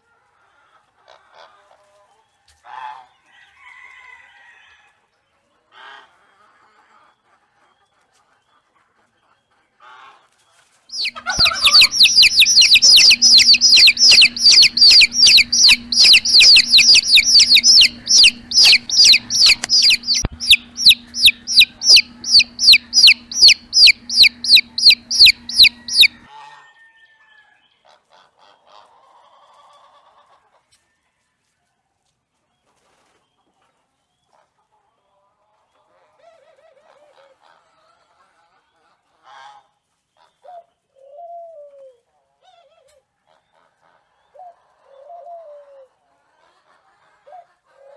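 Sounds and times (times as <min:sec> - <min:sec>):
chicken high downward calls: 0:11.0 - 0:26.2
chickens clucking: 0:11.0 - 0:26.2
low steady hum: 0:11.0 - 0:26.2.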